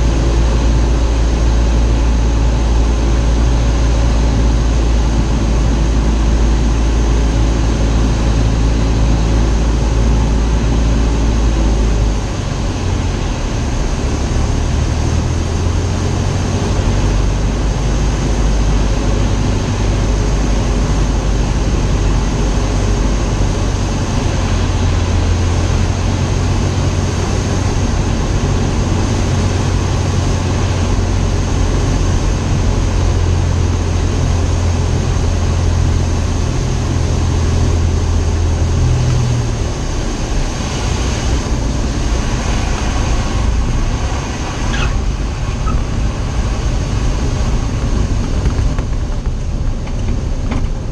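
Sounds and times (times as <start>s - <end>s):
light airplane engine droning: 0.0s - 50.9s.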